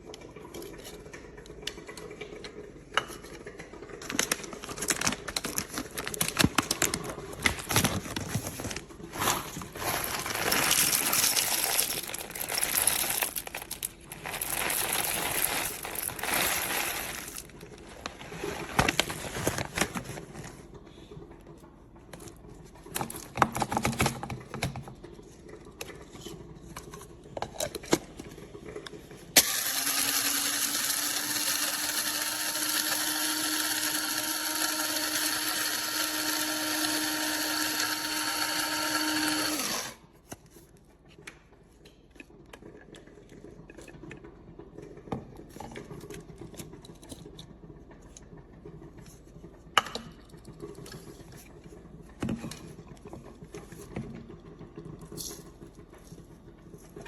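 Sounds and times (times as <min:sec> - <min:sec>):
crinkling and rustling: 0:03.6 - 0:20.9.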